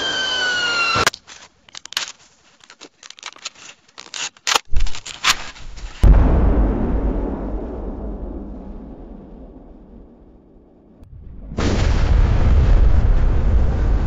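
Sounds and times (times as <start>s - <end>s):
small clicks and crackles: 1.0s - 6.0s
deep rumble: 6.0s - 14.0s.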